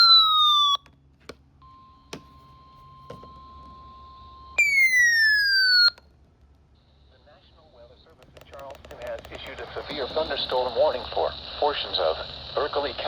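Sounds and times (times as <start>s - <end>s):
faint steady electronic tone: 1.6s - 5.9s.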